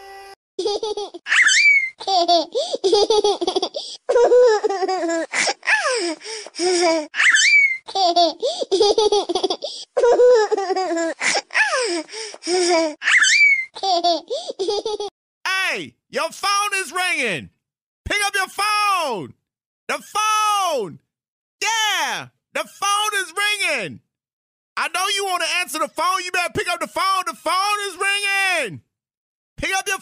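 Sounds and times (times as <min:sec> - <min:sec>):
baby laughing: 0:00.6 - 0:15.1.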